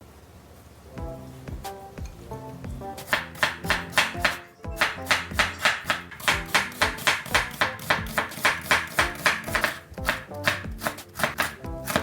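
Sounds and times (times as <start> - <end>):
background music: 0.9 - 12.0
knife chopping on cutting board: 3.0 - 12.0.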